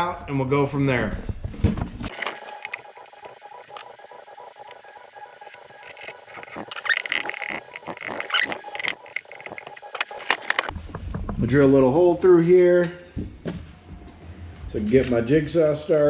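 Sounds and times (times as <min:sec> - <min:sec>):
pencil scratching strokes: 0:02.1 - 0:10.7.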